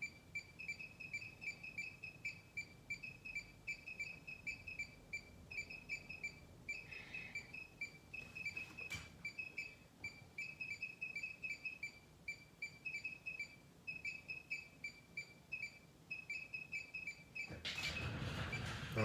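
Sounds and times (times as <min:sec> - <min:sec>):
short electronic beeps: 0:00.0 - 0:17.6.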